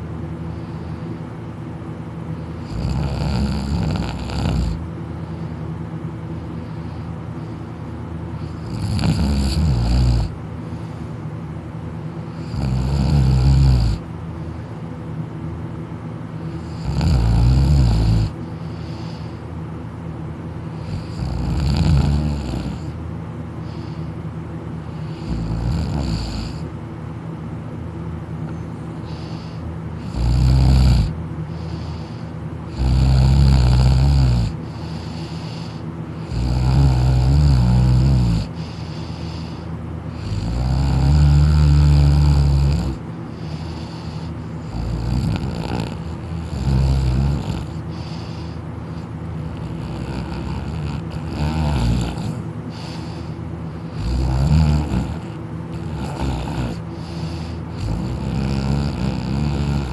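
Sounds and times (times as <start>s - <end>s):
person snoring loudly: 2.5s - 4.8s, 8.4s - 10.4s, 12.3s - 14.0s, 16.5s - 18.4s, 20.7s - 23.0s, 24.9s - 26.7s, 29.0s - 59.9s.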